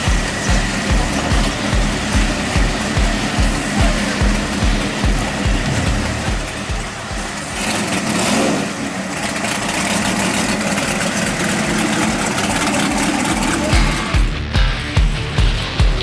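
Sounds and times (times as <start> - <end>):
pickup truck engine running: 0.0 - 16.0.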